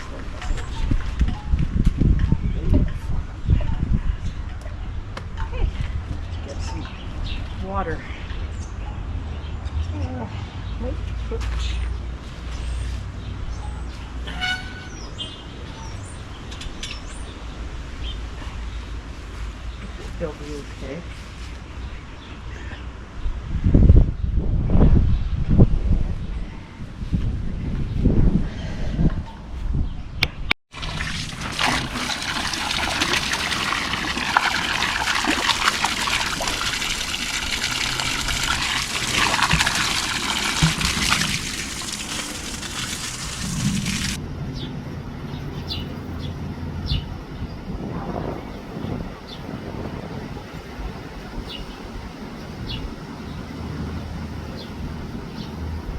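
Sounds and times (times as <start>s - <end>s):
songbirds chirping: 0.0s - 23.4s, 44.5s - 55.9s
water pouring and splashing: 30.7s - 44.2s.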